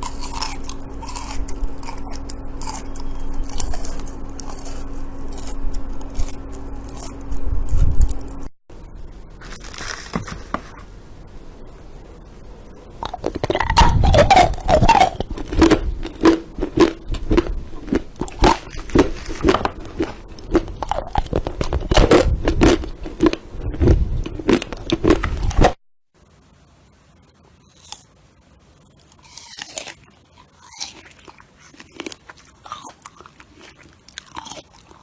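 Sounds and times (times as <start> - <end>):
crunchy chewing and biting: 0.0 - 8.4, 13.0 - 25.8, 27.7 - 28.1, 28.9 - 35.0.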